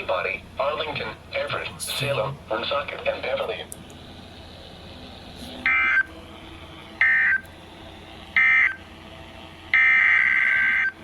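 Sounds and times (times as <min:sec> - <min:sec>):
buzzy data tone bursts: 0:09.7 - 0:11.0.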